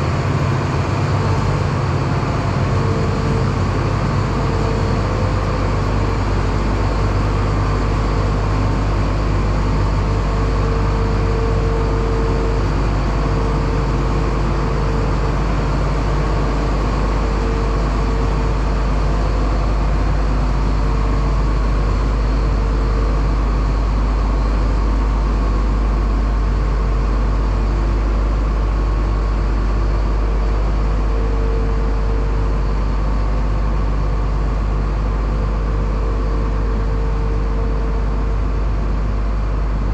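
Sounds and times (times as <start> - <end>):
diesel engine humming: 0.0 - 27.2.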